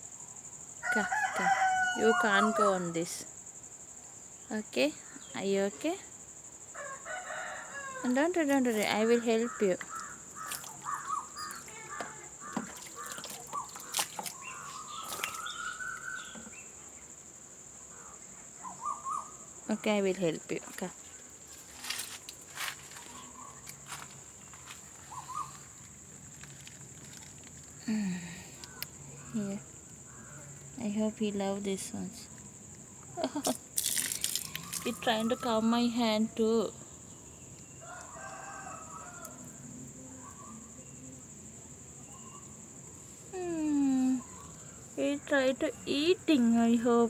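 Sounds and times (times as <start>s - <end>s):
rooster crowing faintly: 6.8s - 16.4s, 37.8s - 40.8s.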